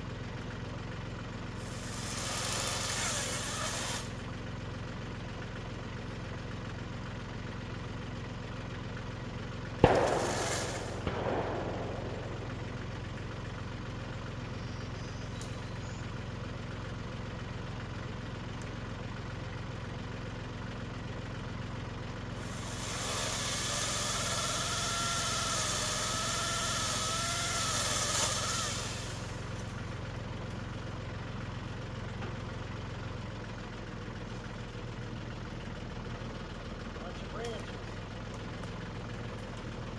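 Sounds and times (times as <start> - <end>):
tractor engine idling: 0.0 - 39.9
sharp bang: 9.9 - 14.6.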